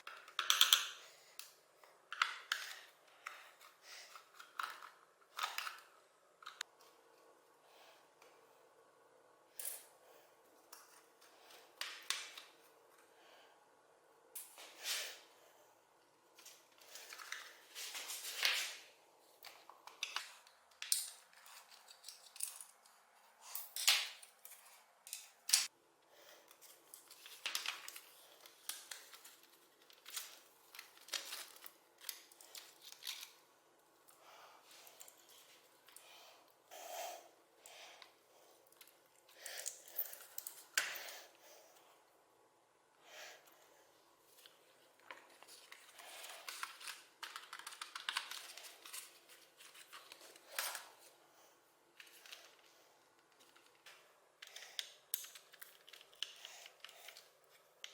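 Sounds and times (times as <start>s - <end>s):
mechanical keyboard clicks and scrapes: 46.3s - 48.8s.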